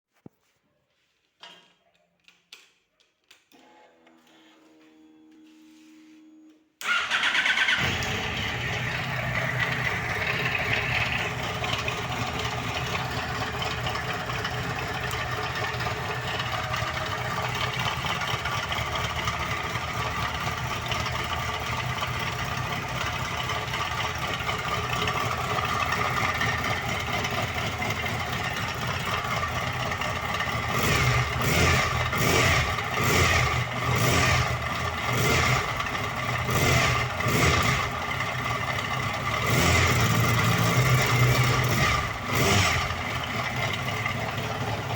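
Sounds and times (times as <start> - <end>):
engine revving blips: 3.7 - 13.4, 30.6 - 38.1, 39.4 - 43.8
motorcycle engine starting and idling: 6.8 - 44.9.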